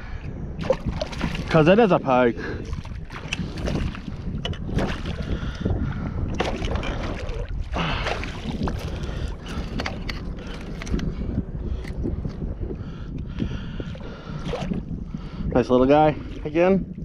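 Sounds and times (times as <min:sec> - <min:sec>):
wind on microphone: 0:00.0 - 0:17.0
water splashes and knocks: 0:00.6 - 0:01.8, 0:02.6 - 0:05.3, 0:06.3 - 0:11.0.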